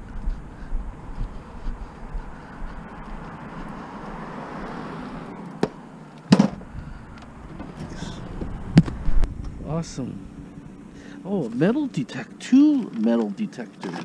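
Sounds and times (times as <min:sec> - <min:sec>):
background rushing noise: 0:00.0 - 0:12.4.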